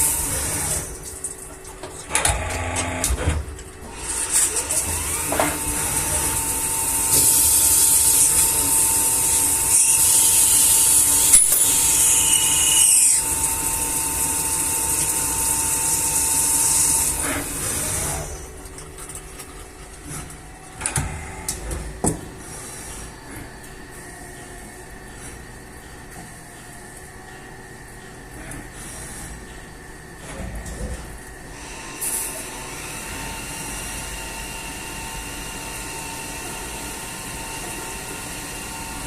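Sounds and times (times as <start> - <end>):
machine motor whine: 2.1 - 18.5.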